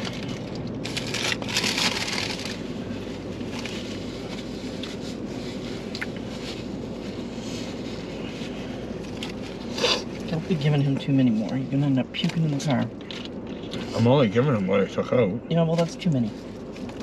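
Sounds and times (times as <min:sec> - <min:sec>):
paper packaging rustling: 0:00.0 - 0:02.6
steady low hum: 0:00.0 - 0:17.0.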